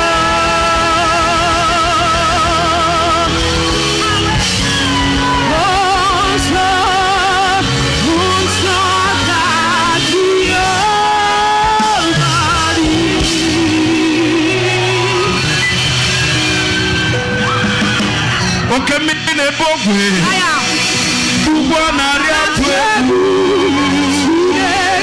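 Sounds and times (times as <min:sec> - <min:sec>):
voices singing with vibrato: 0:00.0 - 0:19.4, 0:20.2 - 0:25.0
band accompaniment: 0:00.0 - 0:25.0.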